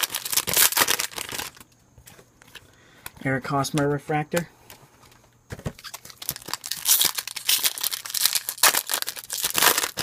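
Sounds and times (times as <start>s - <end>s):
foil wrapper crinkling and tearing: 0.0s - 1.7s, 5.8s - 10.0s.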